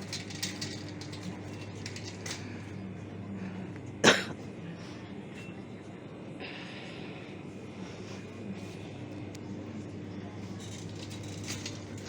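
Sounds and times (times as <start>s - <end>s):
supermarket low hum: 0.0s - 12.0s
person coughing: 4.0s - 4.4s.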